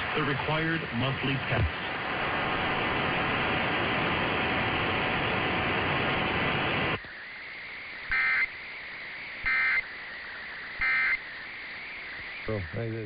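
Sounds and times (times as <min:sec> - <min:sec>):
loud steady hiss: 0:00.0 - 0:13.0
digital squawks: 0:08.1 - 0:08.5, 0:09.4 - 0:09.8, 0:10.7 - 0:11.3, 0:11.9 - 0:13.0.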